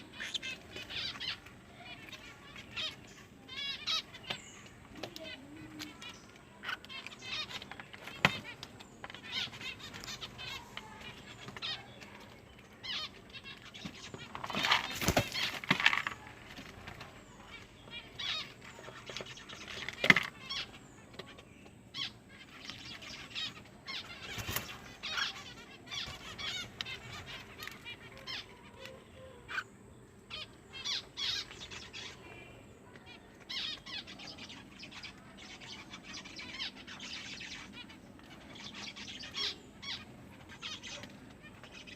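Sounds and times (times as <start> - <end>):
bird wings fluttering: 14.2 - 16.2, 24.3 - 24.8.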